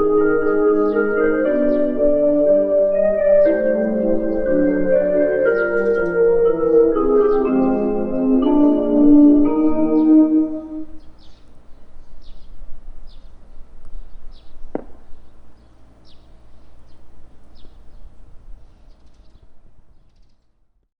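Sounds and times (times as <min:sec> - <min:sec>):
sharp knock: 0:14.7 - 0:15.0.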